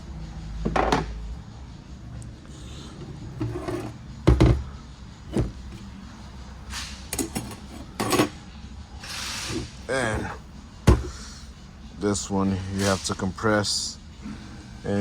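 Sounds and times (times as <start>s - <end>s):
metal parts rubbing and sliding: 2.6s - 4.2s, 5.2s - 8.4s, 9.0s - 10.4s
metal parts knocking and clunking: 2.9s - 8.4s.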